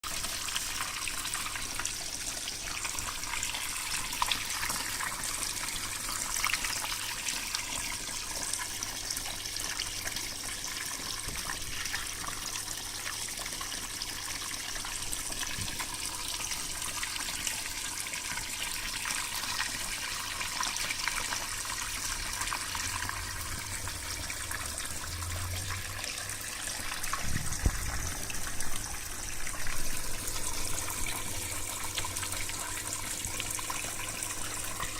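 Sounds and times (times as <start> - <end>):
flowing water rushing: 21.8 - 34.9.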